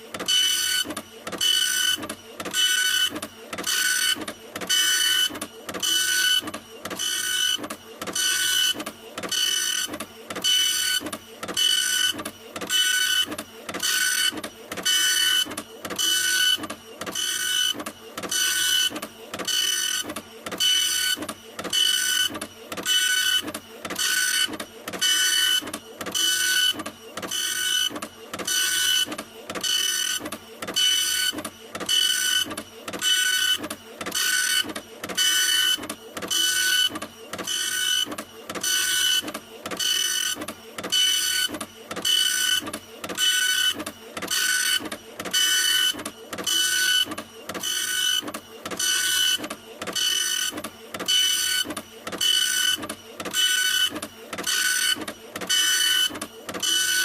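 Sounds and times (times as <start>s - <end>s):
printer mechanism strokes: 0.0s - 57.0s
printer motor whine: 0.0s - 57.0s.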